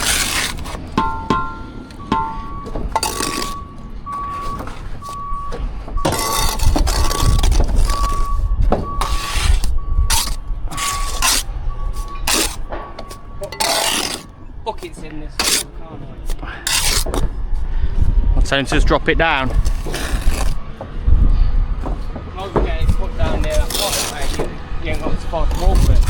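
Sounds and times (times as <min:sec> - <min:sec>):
scraping noise: 0:00.0 - 0:05.2, 0:06.1 - 0:20.7, 0:22.0 - 0:26.0
reversing alarm beeping: 0:00.0 - 0:15.0.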